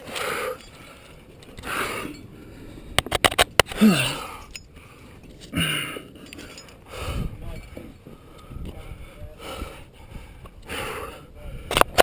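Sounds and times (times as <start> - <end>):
person breathing hard: 0.0 - 3.0, 3.7 - 11.8
person grunting: 3.8 - 4.4.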